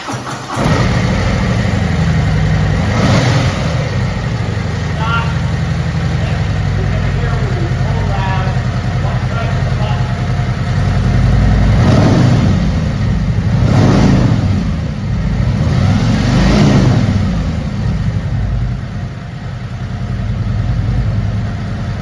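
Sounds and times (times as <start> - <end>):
motorcycle engine revving and idling: 0.0 - 22.0.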